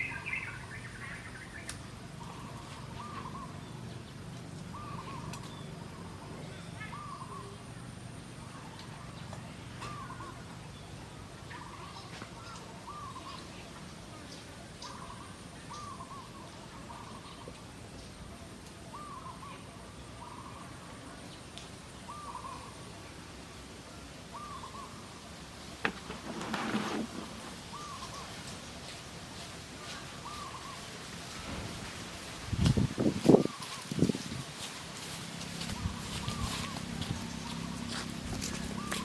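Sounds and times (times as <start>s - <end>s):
bird calling: 0.0s - 3.9s, 4.6s - 7.7s, 8.4s - 10.6s, 11.5s - 13.6s, 22.0s - 22.8s, 24.3s - 28.5s, 29.8s - 30.9s, 35.5s - 39.0s.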